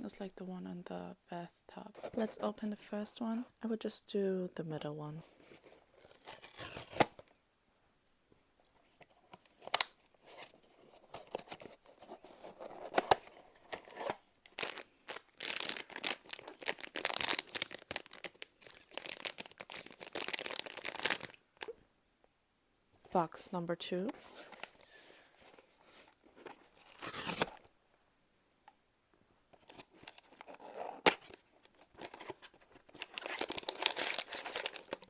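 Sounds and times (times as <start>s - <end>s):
wrapping tearing and crinkling: 5.5s - 7.2s, 12.2s - 21.7s, 24.2s - 27.6s, 29.6s - 35.0s
packaging snapping: 29.6s - 35.0s.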